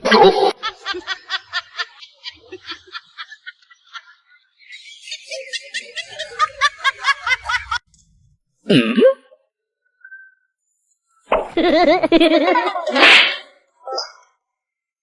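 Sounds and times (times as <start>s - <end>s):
high-pitched cackling laugh: 0.0s - 7.8s, 11.6s - 13.4s
lower laugh: 0.0s - 7.8s, 11.6s - 13.1s.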